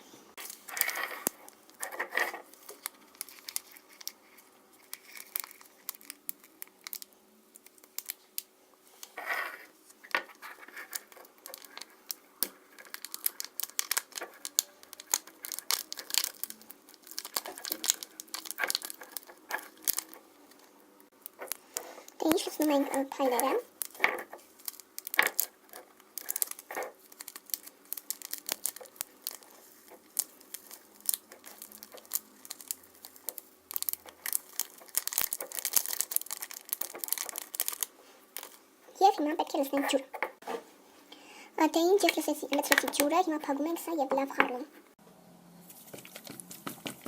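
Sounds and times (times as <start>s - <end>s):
packets tearing: 0.4s - 8.2s, 10.3s - 20.2s, 21.2s - 38.6s
packets crinkling and crackling: 0.4s - 40.5s, 41.9s - 44.7s.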